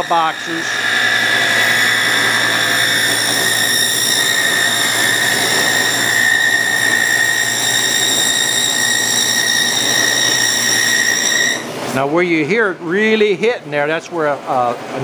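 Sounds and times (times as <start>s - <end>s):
power saw cutting wood: 0.0s - 11.7s.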